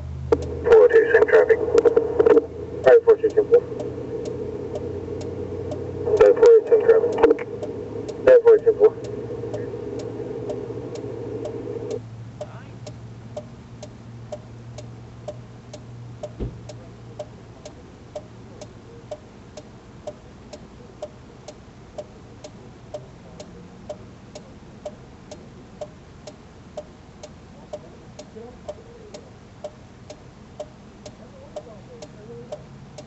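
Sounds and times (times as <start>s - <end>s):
low hum: 0.0s - 21.0s
mechanical ticking: 0.3s - 0.6s, 1.6s - 33.0s
thump: 16.4s - 16.7s.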